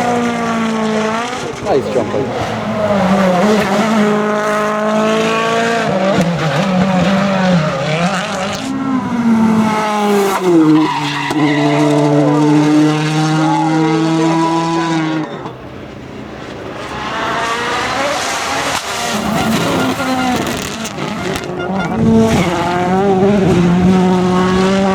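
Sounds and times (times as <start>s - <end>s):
rally car engine revving: 0.0s - 24.9s
tyres skidding and squealing: 0.0s - 24.9s.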